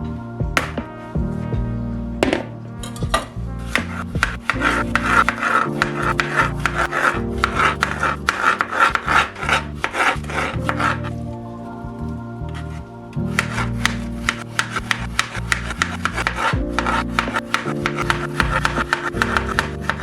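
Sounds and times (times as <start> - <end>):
soft background music: 0.0 - 20.0
knife cutting on wooden board: 13.4 - 20.0.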